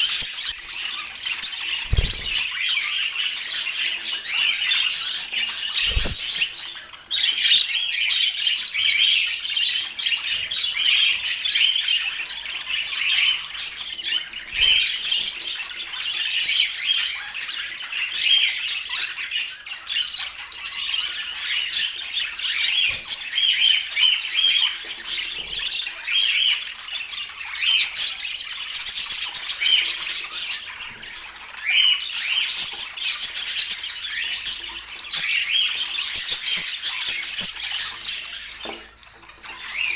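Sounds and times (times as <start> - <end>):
budgerigars chattering: 0.0 - 19.2.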